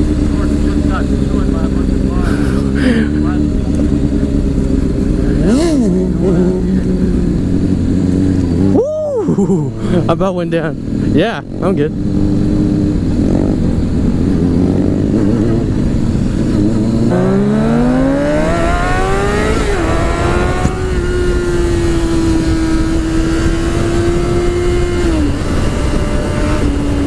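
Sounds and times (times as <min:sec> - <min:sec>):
motorcycle engine accelerating: 0:00.0 - 0:27.0
wind rush: 0:10.8 - 0:27.0.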